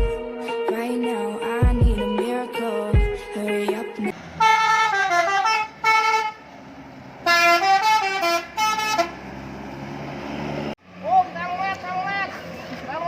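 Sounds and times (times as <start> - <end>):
bus multi-tone horn melody: 4.1 - 6.6, 7.2 - 9.5.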